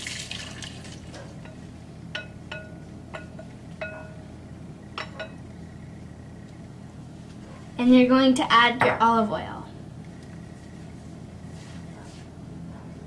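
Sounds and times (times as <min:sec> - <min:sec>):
mixing bowl clinking: 0:00.3 - 0:04.2.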